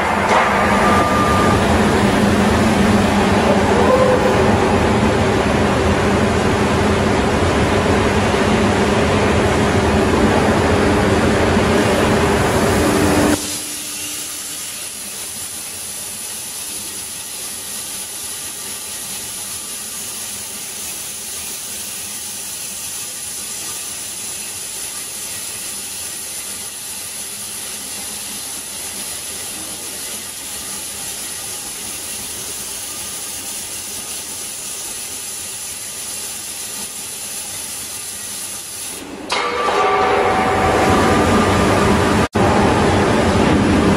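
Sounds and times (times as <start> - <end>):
thin high whine: 0.0 - 6.4, 39.0 - 43.9.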